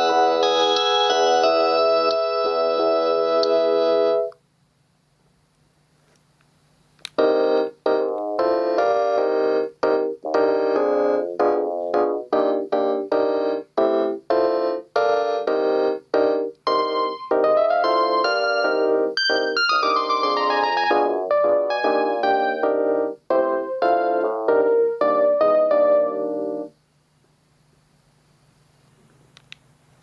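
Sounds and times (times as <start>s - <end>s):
phone ringtone: 0.0s - 4.3s, 15.2s - 22.7s
electronic melody with piano-like notes: 0.0s - 4.4s, 7.2s - 26.8s.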